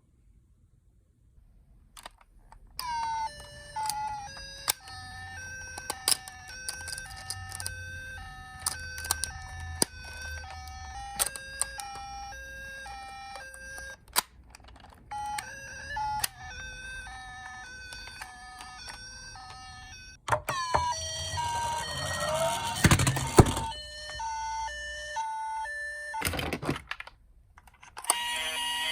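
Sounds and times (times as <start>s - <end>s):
toy siren two-tone hi-lo: 2.8s - 14.0s, 15.1s - 26.4s, 28.0s - 28.9s
gliding wail siren: 2.9s - 14.0s, 15.1s - 26.3s.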